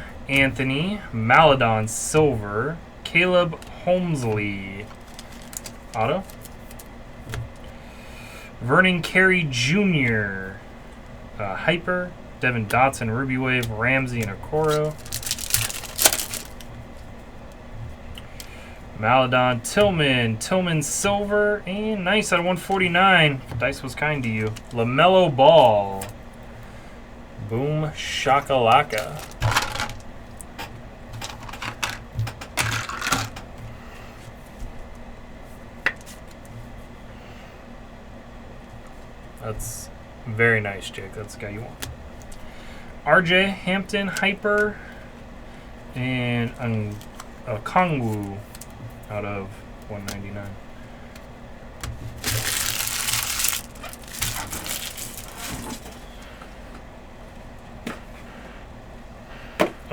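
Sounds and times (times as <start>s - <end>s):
trading cards clicking and rustling: 3.6s - 7.7s, 13.5s - 17.1s, 28.4s - 30.5s, 31.2s - 33.5s, 51.8s - 56.0s
plastic wrappers crinkling: 4.8s - 6.9s, 13.6s - 17.0s, 28.7s - 30.1s, 52.1s - 56.0s
cards clicking: 4.9s - 6.9s, 28.7s - 30.1s.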